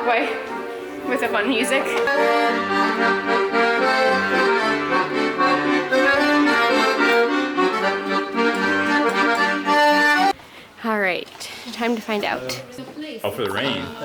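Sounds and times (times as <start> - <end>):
accordion music: 0.0 - 10.4.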